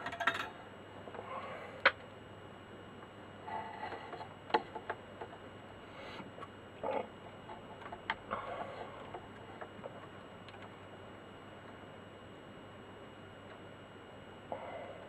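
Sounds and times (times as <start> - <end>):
small clicks and taps: 9.1 - 10.8.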